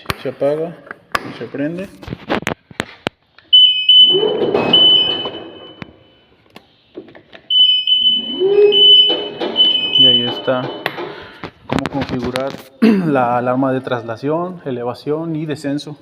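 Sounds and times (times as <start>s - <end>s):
high shrill motion alarm: 3.6s - 6.4s, 7.5s - 10.9s.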